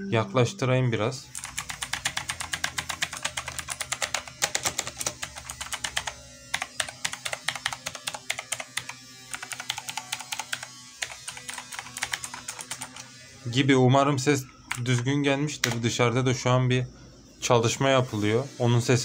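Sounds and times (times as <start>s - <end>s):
clicky keyboard typing: 1.3s - 13.1s, 14.7s - 15.8s.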